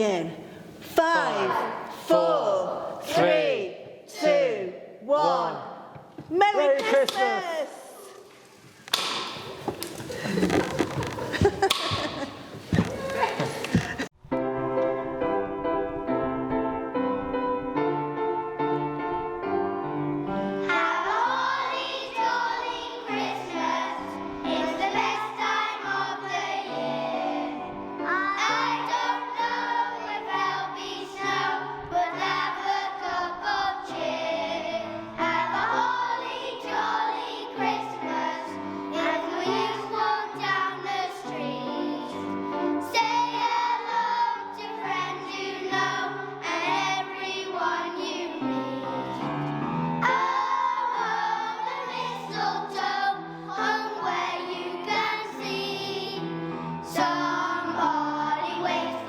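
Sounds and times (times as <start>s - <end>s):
children's choir singing: 20.3s - 59.0s.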